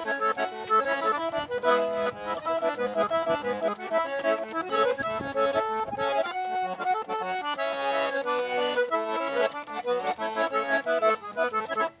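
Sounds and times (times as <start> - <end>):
accordion playing lively melody: 0.0 - 12.0.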